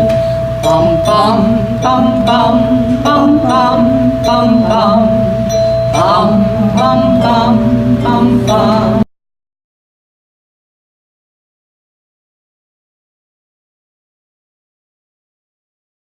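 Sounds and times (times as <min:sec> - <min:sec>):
instrument holding steady note: 0:00.0 - 0:09.1
voices singing: 0:00.0 - 0:09.1.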